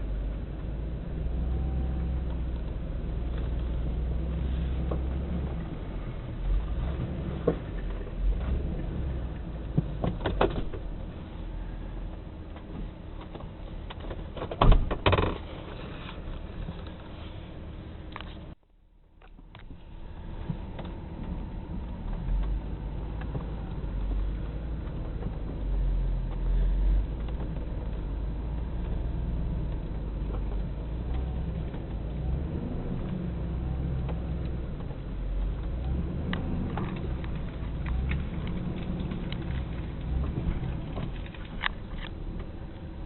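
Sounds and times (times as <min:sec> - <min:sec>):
vehicle low rumble: 0:00.0 - 0:43.0.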